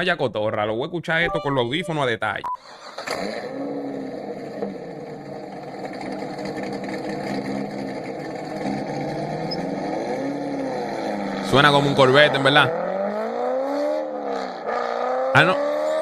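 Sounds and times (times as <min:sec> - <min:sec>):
car engine running: 0:03.0 - 0:13.0.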